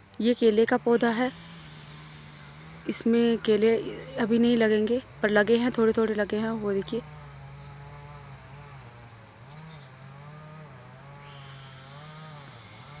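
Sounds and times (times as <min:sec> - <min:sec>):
insect buzzing: 0:00.1 - 0:13.0.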